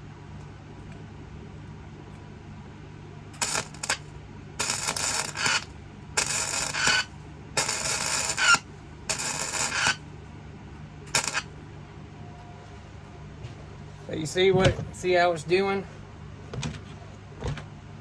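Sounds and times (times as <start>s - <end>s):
welder crackling: 3.4s - 10.0s, 11.1s - 11.5s.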